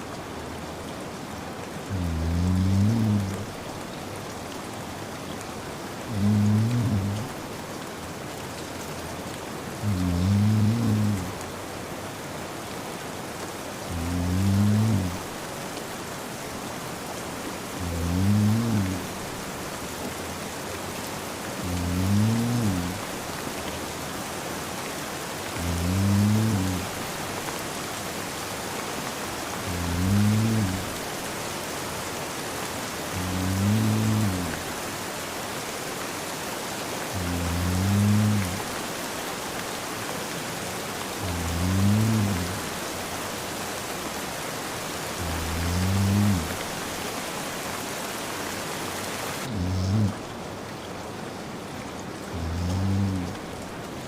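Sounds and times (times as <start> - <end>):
steady rain: 0.0 - 54.0
man snoring: 1.9 - 3.6, 6.1 - 7.4, 9.8 - 11.4, 13.9 - 15.4, 17.8 - 19.4, 21.6 - 23.1, 25.5 - 27.4, 29.6 - 31.1, 33.1 - 34.8, 37.1 - 38.8, 41.2 - 43.0, 45.2 - 46.9, 49.4 - 50.3, 52.3 - 53.5.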